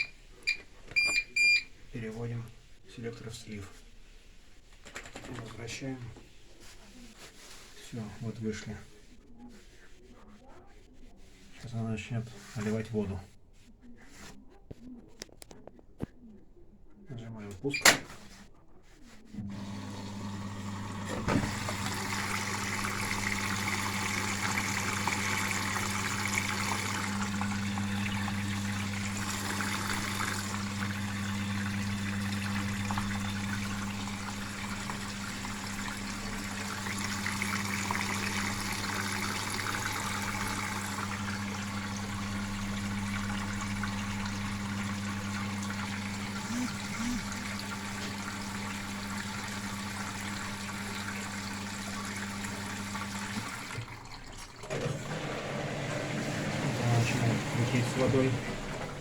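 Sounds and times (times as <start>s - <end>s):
water rushing into washing machine: 19.4s - 59.0s.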